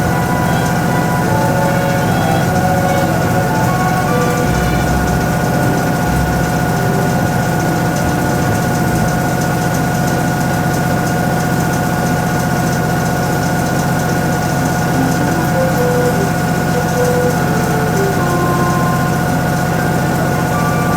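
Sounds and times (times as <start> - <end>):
high whine: 0.0 - 10.2, 14.7 - 20.9
washing machine motor hum: 0.0 - 20.9.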